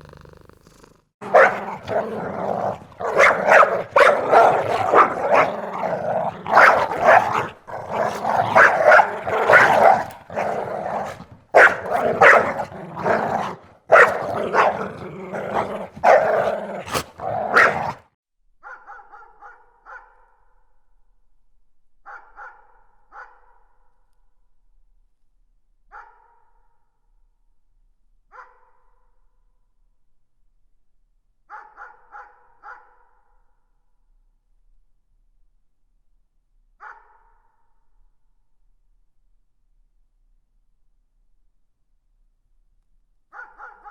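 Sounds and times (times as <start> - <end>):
dog barking and growling: 0.0 - 20.0.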